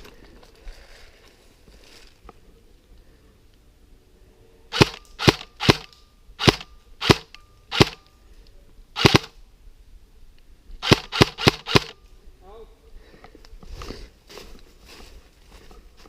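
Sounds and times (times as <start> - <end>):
airsoft gun single shots: 4.7 - 8.0, 9.0 - 9.3, 10.8 - 12.0.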